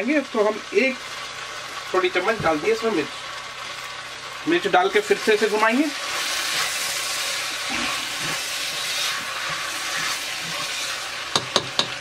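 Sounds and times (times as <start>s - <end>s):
masala sizzling in hot pan: 0.0s - 12.0s
spoon knocking against pan: 11.3s - 12.0s.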